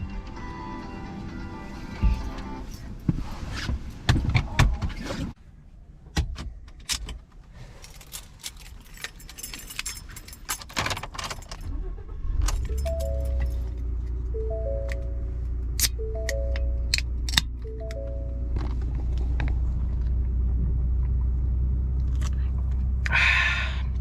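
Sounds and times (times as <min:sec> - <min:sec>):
car keys jangling: 0:07.8 - 0:11.7, 0:12.5 - 0:13.9
low steady hum: 0:12.6 - 0:21.1
stepped chime: 0:12.7 - 0:13.8, 0:14.4 - 0:18.6.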